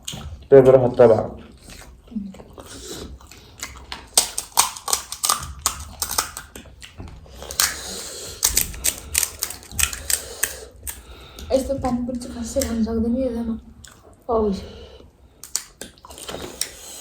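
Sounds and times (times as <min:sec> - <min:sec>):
crunching crisp food: 0:02.6 - 0:11.0.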